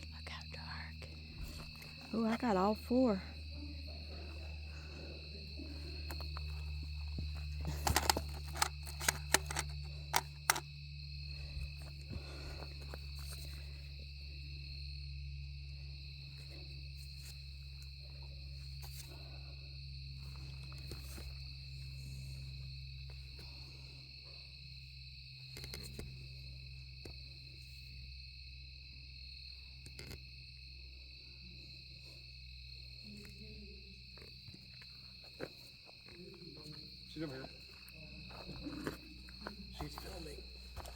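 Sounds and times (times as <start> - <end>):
crickets trilling: 0.0 - 40.9
sharp clicks: 7.5 - 10.6.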